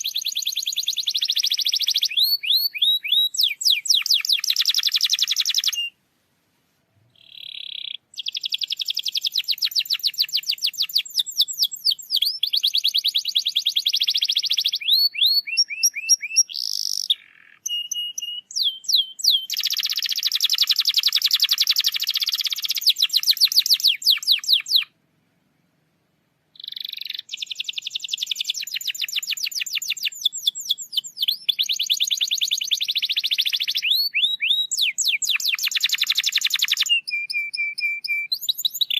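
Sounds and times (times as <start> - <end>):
canary singing trills: 0.0 - 6.0, 7.0 - 24.9, 26.5 - 38.9.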